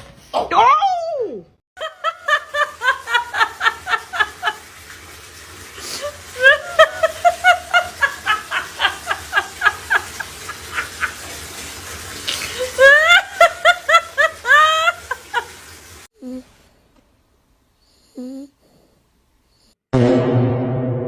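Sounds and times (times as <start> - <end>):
high-pitched rapid laughter: 6.1 - 11.3, 12.5 - 15.6.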